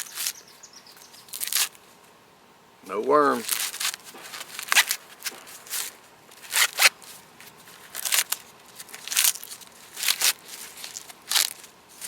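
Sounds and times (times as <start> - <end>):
corn husks tearing: 1.3 - 1.8, 3.2 - 12.0.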